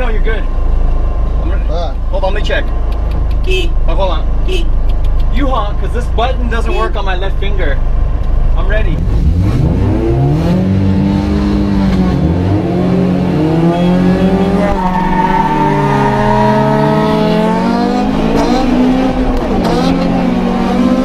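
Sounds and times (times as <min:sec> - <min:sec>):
car engine accelerating hard: 0:09.0 - 0:21.0.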